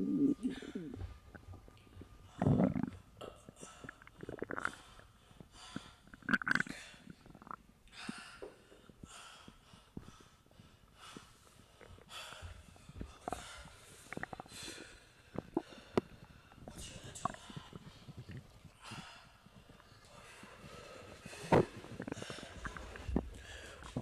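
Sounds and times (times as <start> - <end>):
stomach growling and gurgling: 0.0 - 7.8, 12.7 - 24.0.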